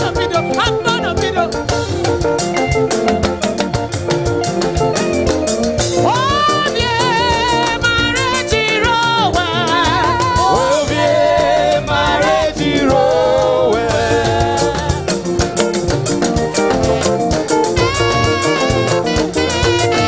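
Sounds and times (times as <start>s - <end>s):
live band playing praise music: 0.0s - 20.0s
steady drum beat: 0.0s - 20.0s
person singing: 6.0s - 15.2s.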